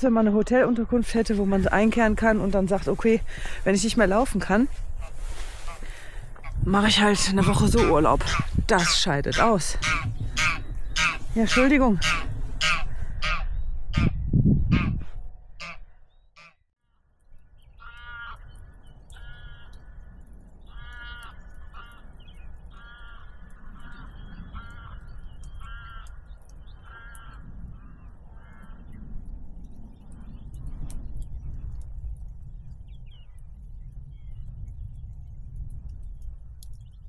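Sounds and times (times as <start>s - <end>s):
harsh bird calls: 17.6s - 29.0s.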